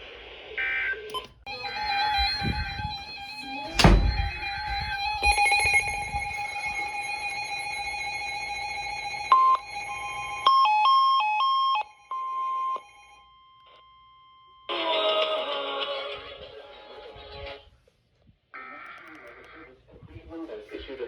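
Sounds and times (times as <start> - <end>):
steady electronic alert tone: 1.1 - 13.1
two-pitch alternating beeps: 1.1 - 13.2.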